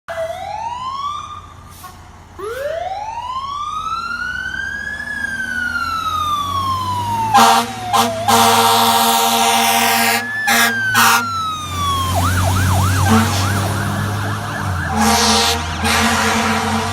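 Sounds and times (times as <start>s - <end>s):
fire truck siren winding up: 2.4s - 16.9s
air horn blasts: 7.4s - 11.3s, 12.9s - 14.0s, 14.7s - 16.9s.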